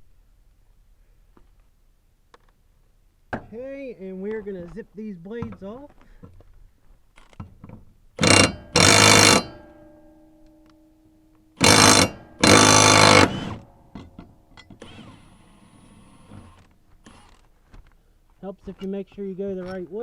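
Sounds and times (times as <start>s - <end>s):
impact wrench rattling: 8.2s - 9.9s, 11.6s - 14.8s.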